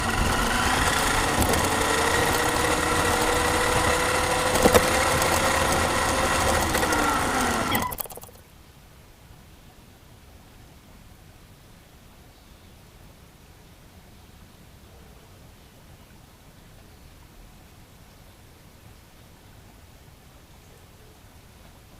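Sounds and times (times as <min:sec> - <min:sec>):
small electric motor whining: 0:00.0 - 0:08.4.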